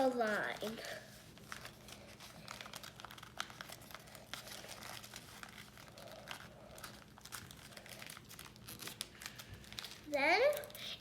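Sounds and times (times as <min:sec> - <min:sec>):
paper crinkling as folded: 0:00.0 - 0:11.0.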